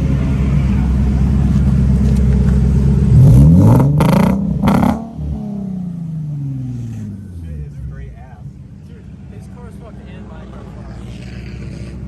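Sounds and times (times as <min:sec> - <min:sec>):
car engine revving with misfire: 0:00.0 - 0:08.4.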